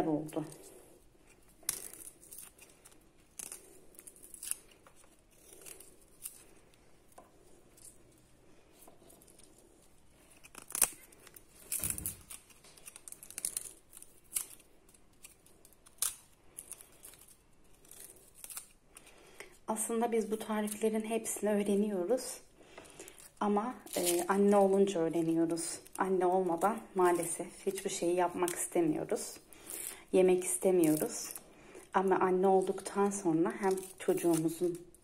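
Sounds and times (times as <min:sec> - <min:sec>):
garlic skins crinkling and tearing: 0:00.0 - 0:35.0.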